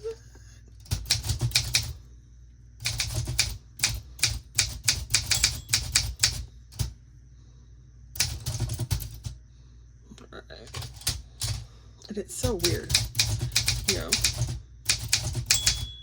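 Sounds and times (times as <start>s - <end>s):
manual typewriter keys striking: 0.8s - 1.9s, 2.8s - 6.9s, 8.2s - 9.3s, 10.7s - 11.6s, 12.4s - 16.0s.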